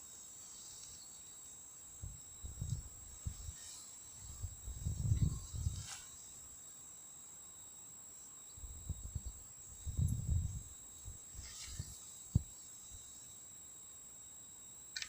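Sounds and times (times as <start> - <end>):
cricket trill: 0.0 - 15.0.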